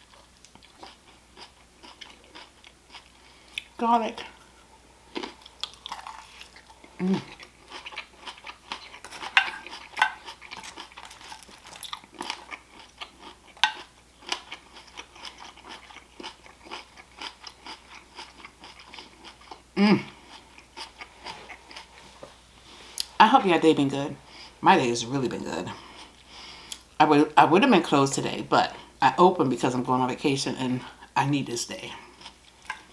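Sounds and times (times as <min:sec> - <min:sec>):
person chewing and crunching food: 0:00.0 - 0:22.2, 0:25.6 - 0:27.0, 0:31.8 - 0:32.9.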